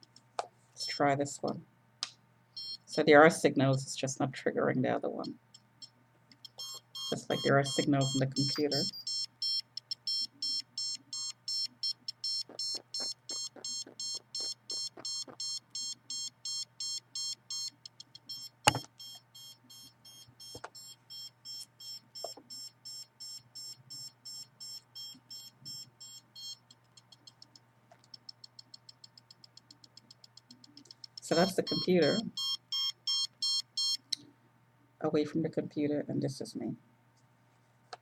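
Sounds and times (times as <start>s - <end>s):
signal detector beeping: 2.6s - 2.9s, 5.2s - 27.4s, 30.5s - 34.0s.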